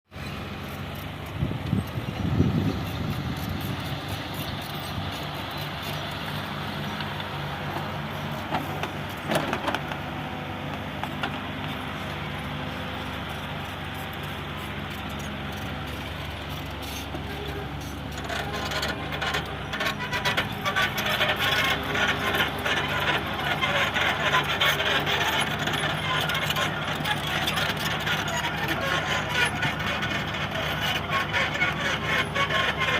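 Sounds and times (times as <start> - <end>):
diesel engine running: 0.1 - 32.9
rattling clatter: 16.5 - 32.9.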